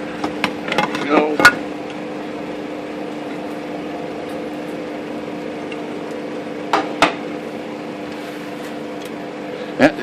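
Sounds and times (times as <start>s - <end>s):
steady room hum: 0.0s - 10.0s.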